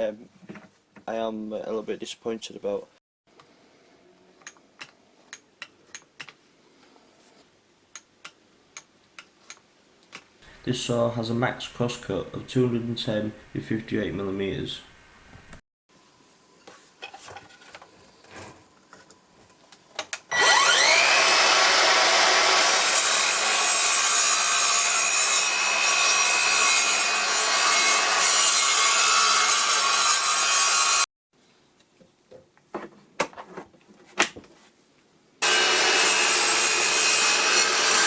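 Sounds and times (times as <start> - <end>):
mitre saw cutting wood: 20.3 - 31.1, 35.4 - 38.0.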